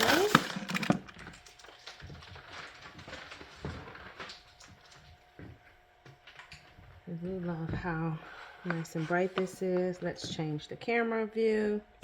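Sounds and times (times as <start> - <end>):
faint steady hum: 0.0 - 12.0.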